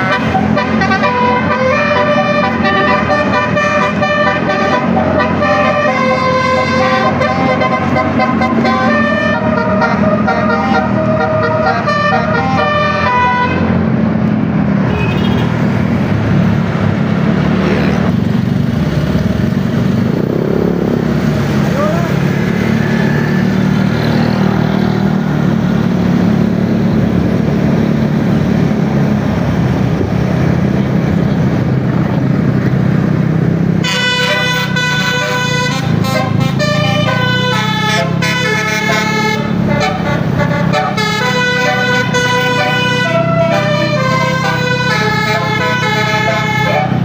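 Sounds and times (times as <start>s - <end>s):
multi-tone bus horn tune: 0.0s - 14.0s, 14.8s - 15.6s, 33.7s - 47.0s
heavy vehicle engine humming: 0.0s - 47.0s.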